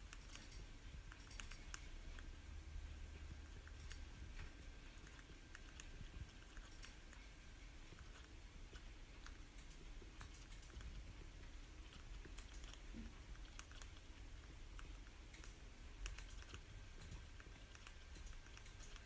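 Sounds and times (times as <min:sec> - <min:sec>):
light clicks and ticks: 0:14.8 - 0:19.0.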